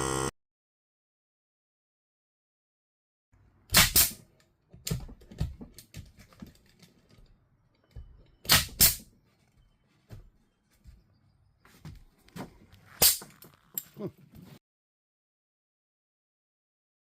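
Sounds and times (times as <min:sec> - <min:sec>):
sharp knocks and clicks: 0:04.7 - 0:08.9.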